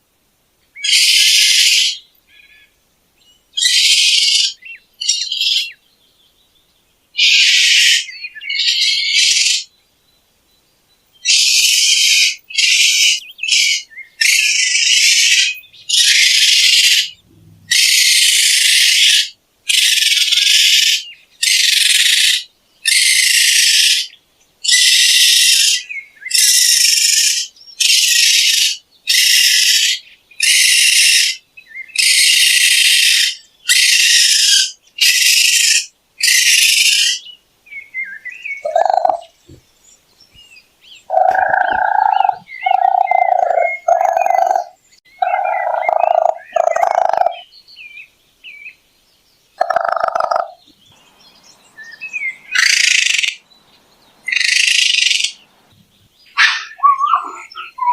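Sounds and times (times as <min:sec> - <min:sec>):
raccoon lower pitched calls: 0:00.8 - 0:02.7, 0:03.6 - 0:05.7, 0:07.2 - 0:09.6, 0:11.2 - 0:37.2, 0:38.6 - 0:39.3, 0:41.1 - 0:47.5, 0:49.6 - 0:50.6, 0:52.5 - 0:53.4, 0:54.3 - 0:55.4, 0:56.3 - 0:57.9
raccoon harsh cries: 0:11.3 - 0:24.1, 0:24.7 - 0:31.4, 0:32.0 - 0:37.2, 0:41.1 - 0:47.4, 0:56.4 - 0:57.9.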